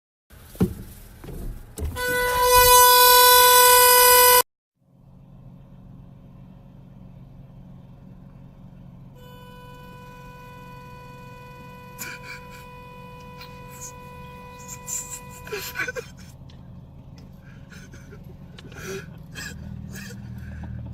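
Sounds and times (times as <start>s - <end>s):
low steady rumble: 0.3s - 20.9s
car horn long steady tone: 1.8s - 4.5s, 9.0s - 16.4s.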